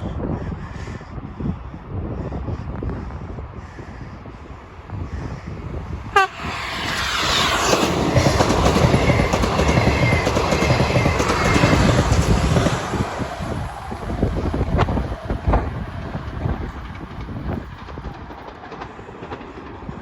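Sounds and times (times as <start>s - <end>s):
train wheels rushing on rails: 3.7s - 20.0s
train whine falling in pitch: 6.0s - 16.6s.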